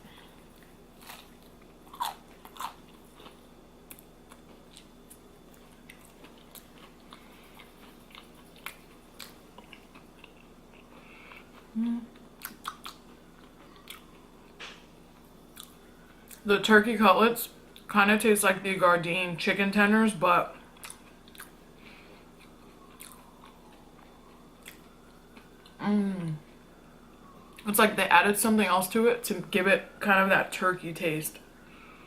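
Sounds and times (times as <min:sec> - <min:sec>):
person chewing and biting: 0:00.4 - 0:14.8, 0:15.5 - 0:16.4, 0:20.8 - 0:25.8.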